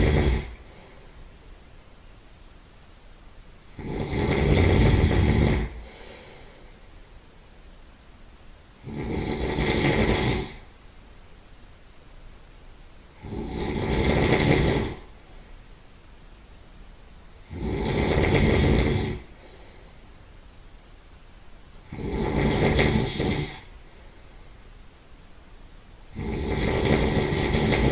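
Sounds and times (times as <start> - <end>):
heavy nasal snoring: 0.0 - 1.0, 3.7 - 6.6, 8.8 - 10.7, 13.1 - 15.2, 17.4 - 19.9, 21.8 - 23.8, 26.1 - 27.9.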